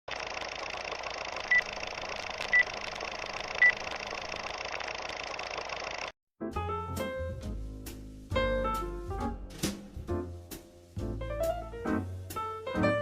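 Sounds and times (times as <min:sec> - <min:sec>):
music: 0:06.4 - 0:13.0.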